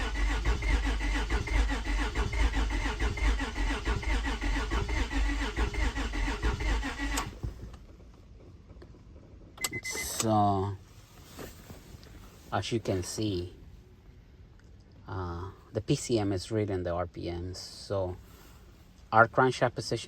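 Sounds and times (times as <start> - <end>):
car engine cranking on starter: 0.0 - 10.5.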